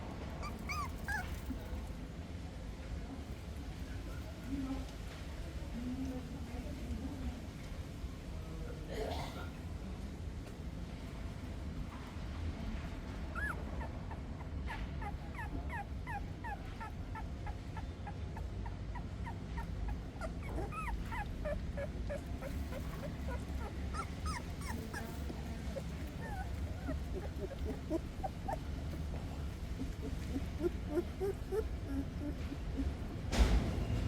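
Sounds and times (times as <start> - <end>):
puppies whimpering: 0.4 - 1.7, 13.3 - 33.8.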